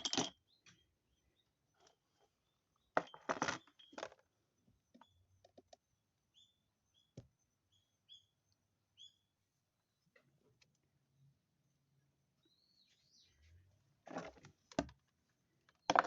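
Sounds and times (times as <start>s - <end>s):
small bird chirping: 0.0s - 13.7s.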